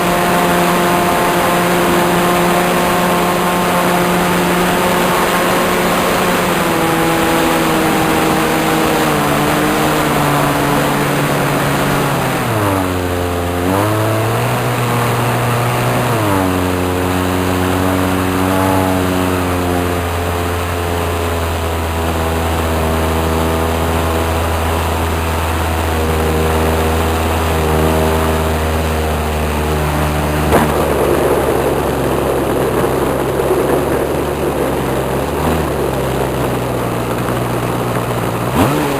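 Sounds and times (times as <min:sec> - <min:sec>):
model airplane engine and propeller: 0:00.0 - 0:38.9
rushing noise: 0:28.0 - 0:38.9.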